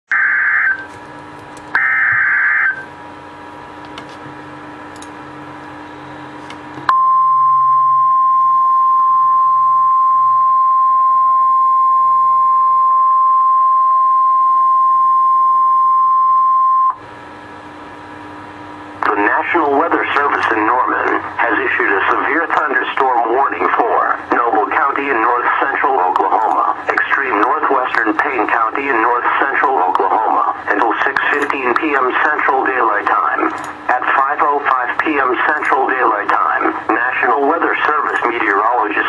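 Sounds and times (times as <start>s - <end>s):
steady warning alarm tone: 0.1s - 1.0s, 1.7s - 3.1s, 6.9s - 17.0s
low radio hiss: 19.0s - 39.0s.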